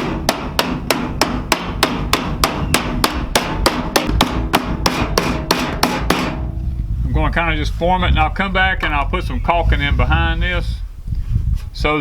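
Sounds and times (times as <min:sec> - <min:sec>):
hammer striking metal panel: 0:00.0 - 0:06.6.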